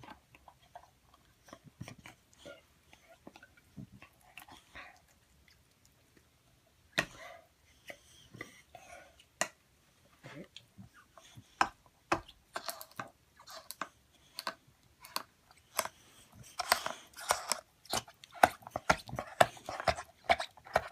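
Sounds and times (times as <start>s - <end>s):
chewing crunchy food: 12.2s - 20.9s.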